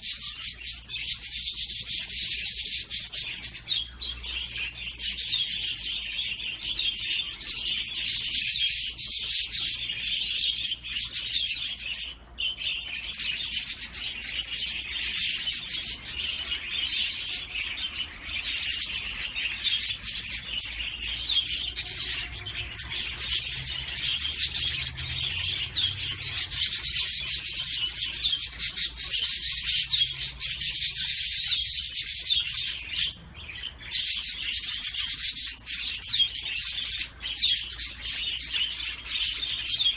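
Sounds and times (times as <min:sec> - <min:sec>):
cage birds chirping: 0:00.0 - 0:39.9.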